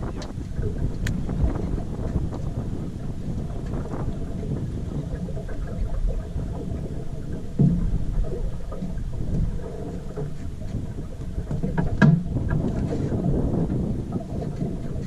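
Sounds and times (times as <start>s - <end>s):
wind rumbling on microphone: 0.0s - 15.0s
dull thump: 7.6s - 8.1s.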